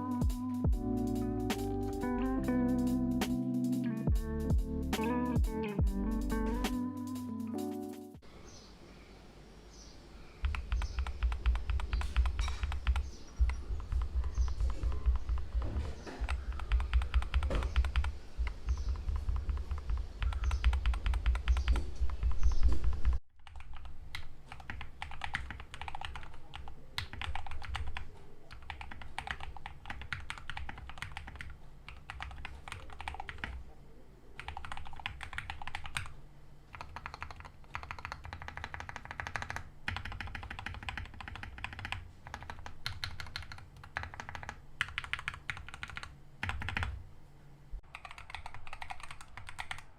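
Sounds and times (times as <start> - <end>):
mechanical keyboard typing: 10.4 - 22.3, 22.9 - 33.6, 34.4 - 36.1, 36.7 - 47.0, 47.8 - 49.9.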